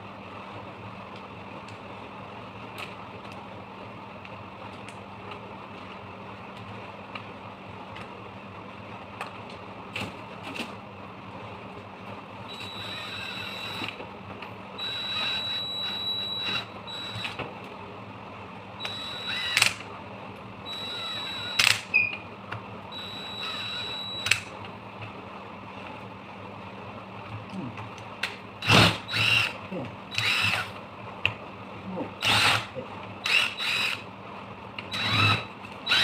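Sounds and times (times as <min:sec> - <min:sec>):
low steady hum: 0:00.0 - 0:36.0
cordless drill whine: 0:12.5 - 0:14.0, 0:14.8 - 0:17.4, 0:18.8 - 0:19.8, 0:20.7 - 0:22.1, 0:22.9 - 0:24.4, 0:28.6 - 0:30.8, 0:32.2 - 0:34.0, 0:34.9 - 0:36.0.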